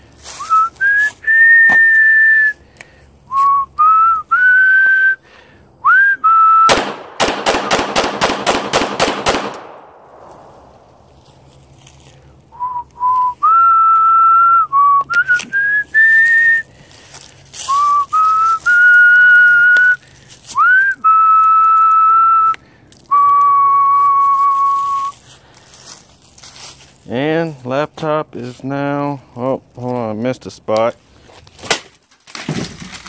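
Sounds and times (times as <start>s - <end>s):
person whistling a tune: 0.3s - 2.6s, 3.3s - 5.2s, 5.8s - 6.7s, 12.5s - 16.7s, 17.6s - 25.2s.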